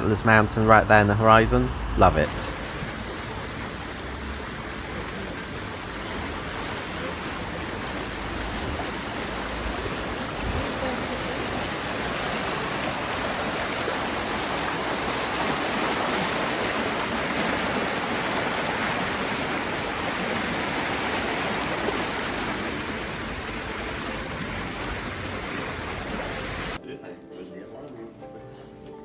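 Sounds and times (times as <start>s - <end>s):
river water rushing: 2.1s - 26.8s.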